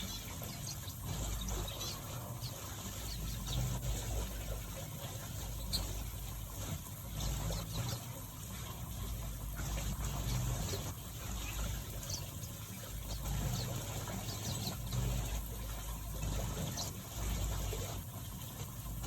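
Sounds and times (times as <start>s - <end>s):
finches chirping: 0.0s - 8.2s, 9.0s - 18.0s.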